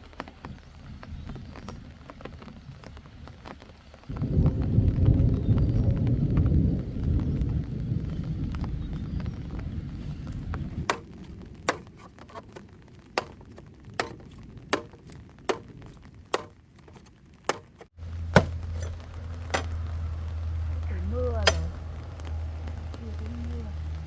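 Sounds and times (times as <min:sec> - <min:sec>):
heavy rain: 0:00.0 - 0:24.0
chopping bamboo: 0:10.8 - 0:12.6, 0:13.2 - 0:15.7, 0:16.3 - 0:19.8, 0:21.4 - 0:21.8.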